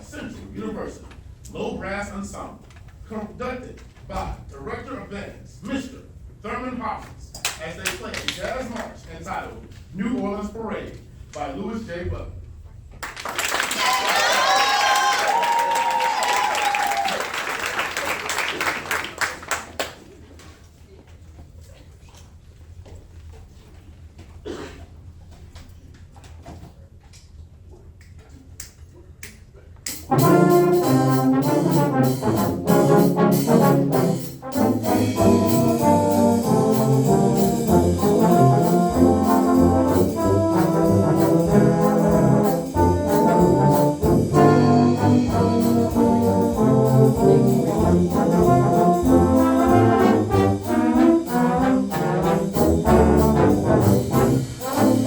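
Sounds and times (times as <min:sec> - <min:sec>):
brass ensemble playing a march: 0:29.9 - 0:55.0.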